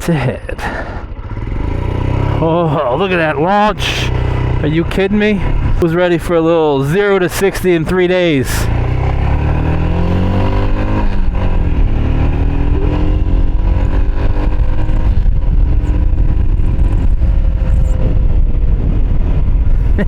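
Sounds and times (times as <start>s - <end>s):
motorcycle engine accelerating: 0.0s - 20.0s.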